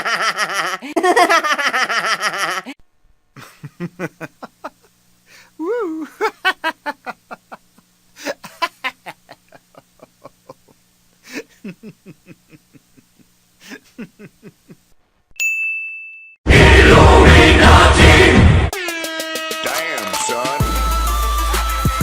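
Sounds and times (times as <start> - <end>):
rapid choppy laughter: 3.4 - 5.0, 5.6 - 15.0
bright ding: 15.4 - 16.4.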